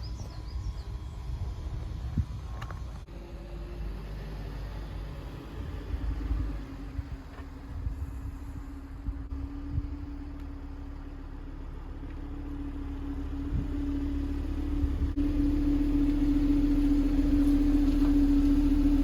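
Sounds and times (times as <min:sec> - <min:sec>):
car engine drone: 0:00.0 - 0:19.0
road rumble: 0:00.0 - 0:19.0.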